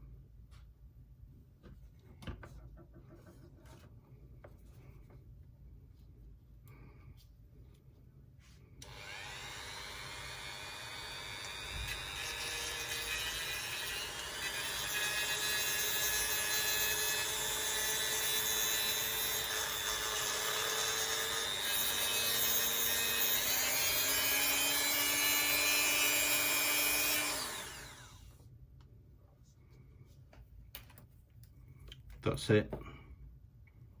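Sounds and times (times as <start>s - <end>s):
rotary tool grinding: 8.8s - 28.2s.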